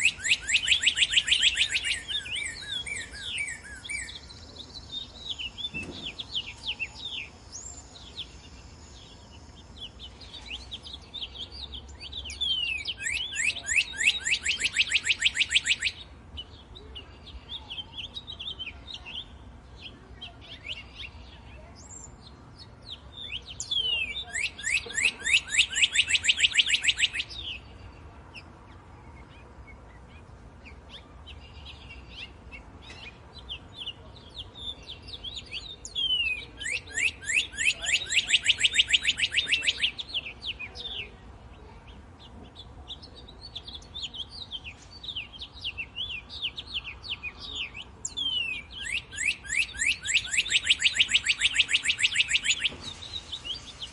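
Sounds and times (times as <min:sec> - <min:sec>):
bird whistling song phrases: 0:00.0 - 0:16.1, 0:23.1 - 0:27.7, 0:33.8 - 0:41.1, 0:43.4 - 0:53.9
soft bird chirps: 0:00.0 - 0:53.9.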